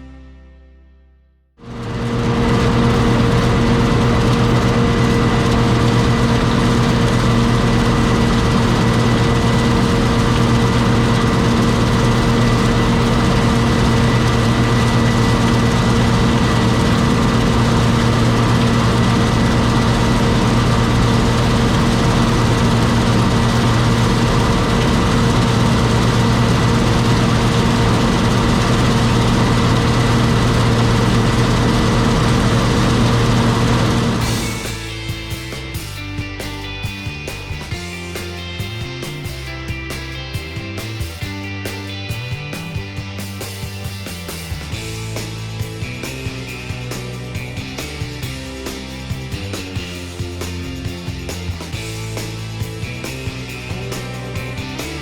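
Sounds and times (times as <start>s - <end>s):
diesel engine running: 1.6s - 55.0s.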